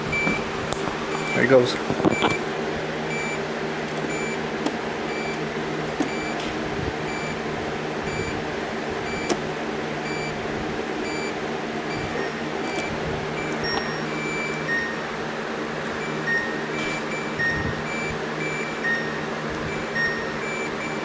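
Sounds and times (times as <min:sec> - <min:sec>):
machine hum: 0:00.0 - 0:21.0
short high beeps: 0:11.9 - 0:15.0, 0:16.0 - 0:21.0.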